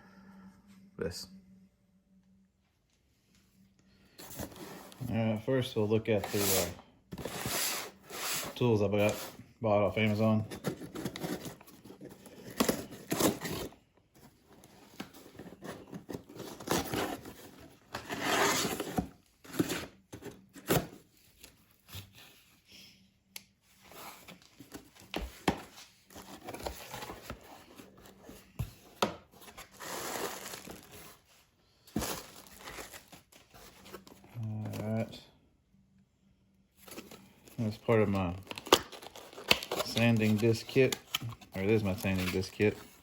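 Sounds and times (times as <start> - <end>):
packaging tearing and crinkling: 38.4 - 42.7.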